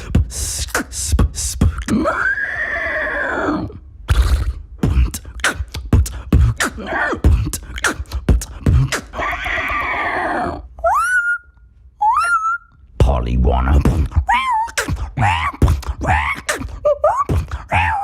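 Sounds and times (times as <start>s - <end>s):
person beatboxing: 0.0s - 2.1s, 4.1s - 9.4s, 13.0s - 18.0s.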